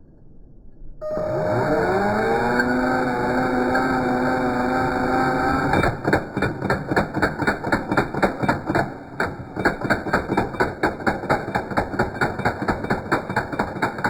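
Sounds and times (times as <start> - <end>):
rapid metallic tool clicking: 5.7 - 14.0.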